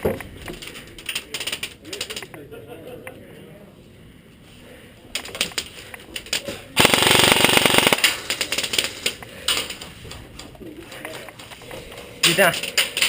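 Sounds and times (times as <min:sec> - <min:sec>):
airsoft gun full-auto burst: 0:06.8 - 0:08.9.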